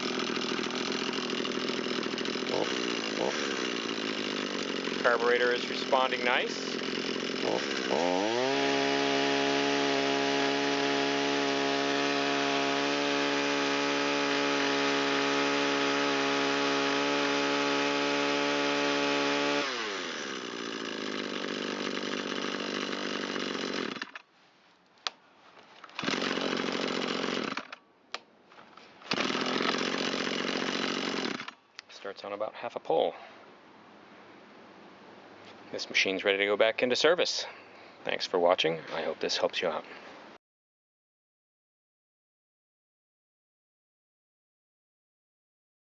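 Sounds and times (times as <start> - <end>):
string trimmer engine: 0.0 - 24.2, 25.8 - 27.8, 29.0 - 31.6.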